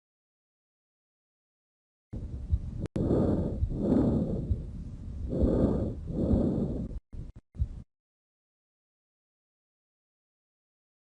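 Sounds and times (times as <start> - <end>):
breathing through a stethoscope: 2.8 - 7.0.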